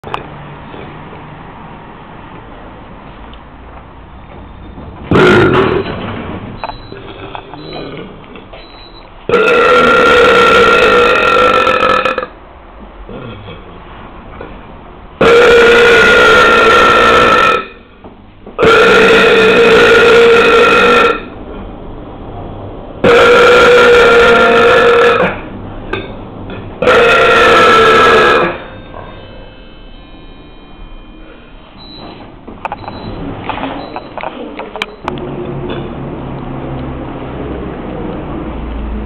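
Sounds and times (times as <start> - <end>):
man belching: 5.1 - 5.9, 7.0 - 8.2, 9.3 - 12.4, 13.1 - 13.7, 15.2 - 17.8, 18.6 - 21.3, 23.0 - 25.4, 26.8 - 28.7.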